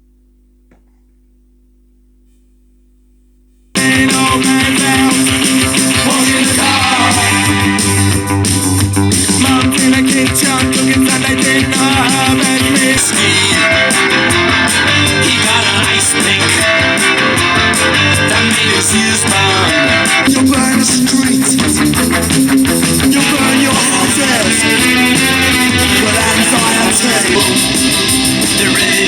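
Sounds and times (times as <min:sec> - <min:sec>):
faint hum: 0:00.0 - 0:03.8
rock music with guitars: 0:03.8 - 0:29.0.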